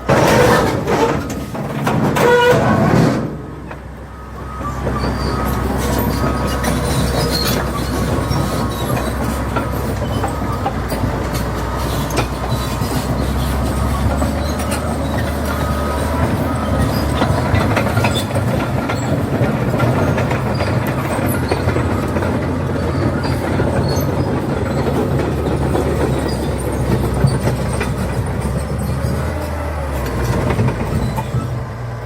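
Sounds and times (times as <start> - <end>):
dozer diesel engine running: 0.0 - 32.0
steel tracks clanking and squealing: 0.0 - 32.0.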